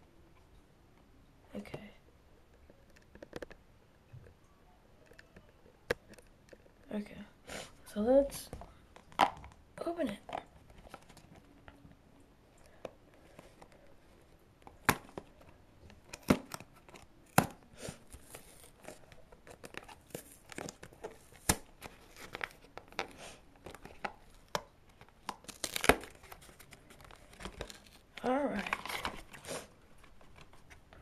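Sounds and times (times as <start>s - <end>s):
packaging crinkling and tearing: 13.2s - 31.0s.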